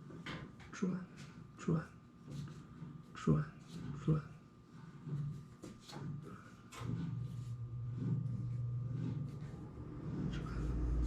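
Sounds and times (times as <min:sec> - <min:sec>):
pipe cutter grinding: 0:03.7 - 0:11.0.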